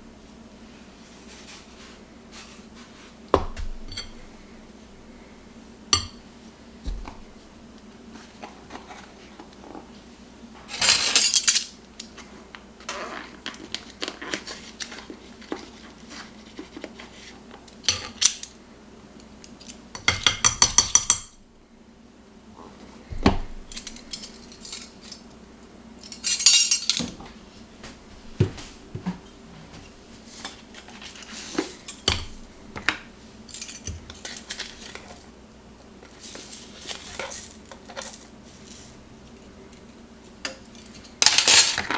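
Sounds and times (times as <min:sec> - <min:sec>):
faint steady hum: 0:00.0 - 0:41.9
dishes and utensils clinking: 0:03.8 - 0:04.3, 0:06.0 - 0:06.3, 0:26.1 - 0:27.3, 0:30.4 - 0:35.2.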